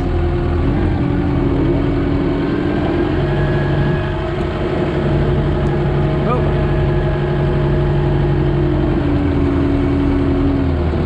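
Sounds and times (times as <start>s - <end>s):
tractor diesel engine running: 0.0s - 11.0s.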